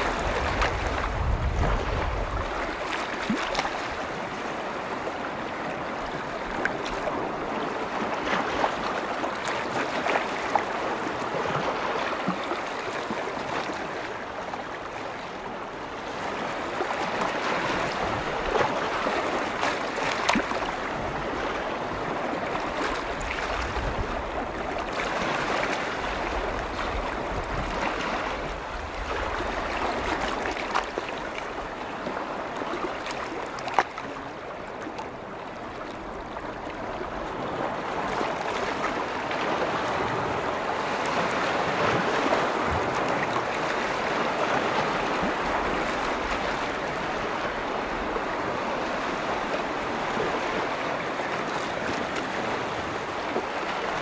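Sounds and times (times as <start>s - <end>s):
waves washing on shore: 0.0s - 54.0s.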